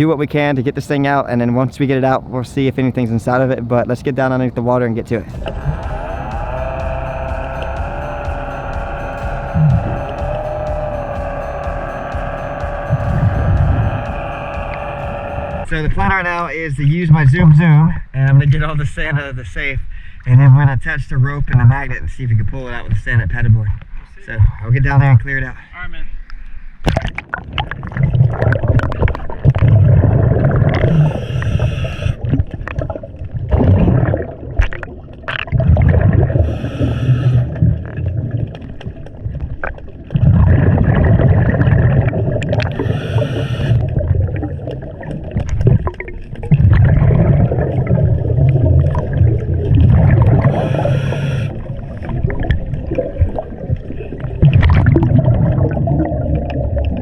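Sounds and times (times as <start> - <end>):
low underwater rumbling: 5.2 - 16.2, 27.0 - 57.0
regulator inhale hiss: 30.8 - 32.2, 36.4 - 37.6, 42.7 - 44.0, 50.4 - 51.7.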